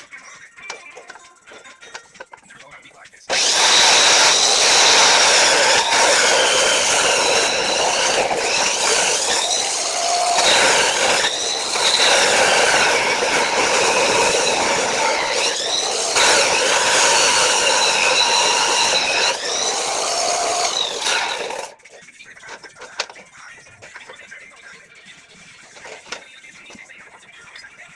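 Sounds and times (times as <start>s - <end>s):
grinder saw cutting steel: 3.3s - 21.8s.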